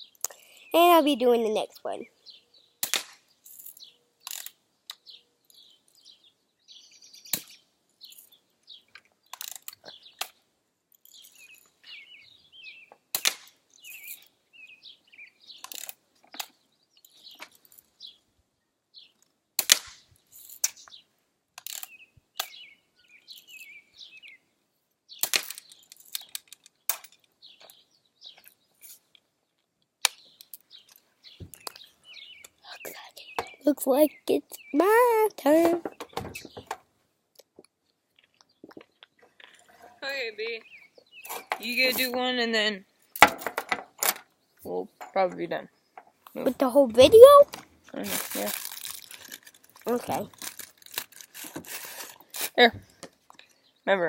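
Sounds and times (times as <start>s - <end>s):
small birds chirping: 0.0s - 54.0s
bb gun cracks: 2.8s - 3.3s, 13.1s - 13.6s, 19.6s - 20.0s, 25.2s - 25.7s.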